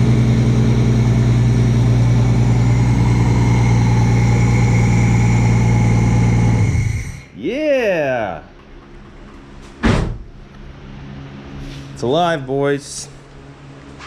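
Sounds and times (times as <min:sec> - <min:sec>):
car engine idling: 0:00.0 - 0:07.3.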